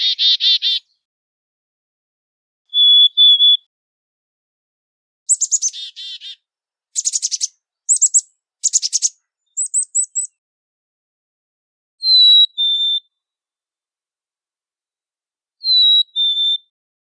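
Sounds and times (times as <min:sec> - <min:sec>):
chickadee calling: 0:00.0 - 0:01.0, 0:02.7 - 0:03.6, 0:05.3 - 0:06.4, 0:07.0 - 0:10.3, 0:12.0 - 0:13.0, 0:15.6 - 0:16.6.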